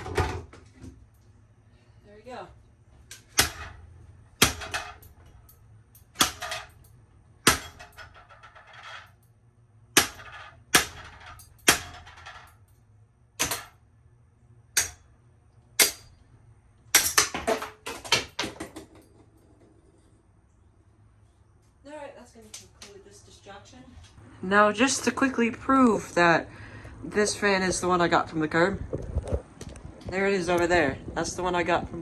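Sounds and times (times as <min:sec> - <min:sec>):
heavy blows smashing fan: 0:03.1 - 0:08.8
rattling and clattering: 0:03.2 - 0:09.3, 0:10.0 - 0:12.8.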